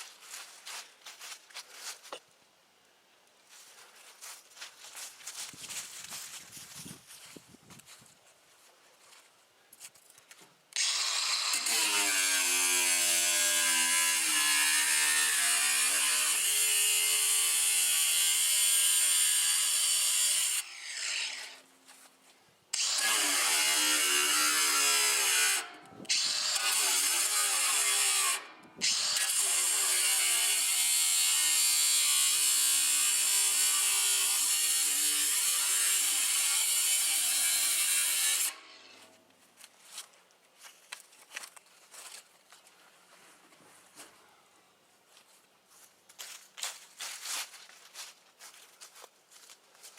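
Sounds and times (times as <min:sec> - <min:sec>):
angle grinder grinding: 0:10.7 - 0:21.7, 0:22.8 - 0:39.1.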